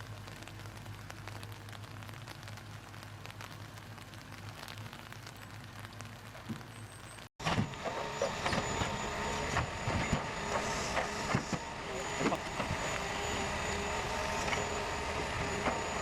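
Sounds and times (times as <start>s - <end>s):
machine engine and hydraulics whine: 6.8s - 16.0s.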